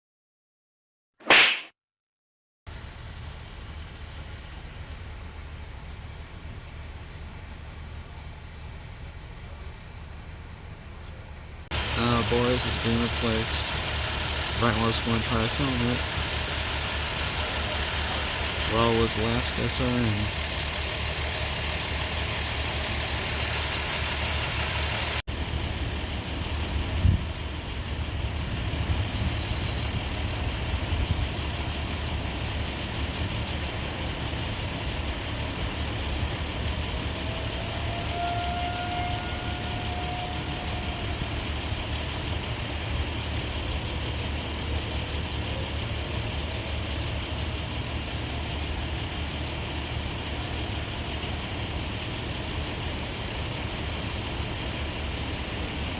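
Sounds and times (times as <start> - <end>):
sharp thump: 1.2 - 1.7
truck engines rumbling: 2.7 - 55.9.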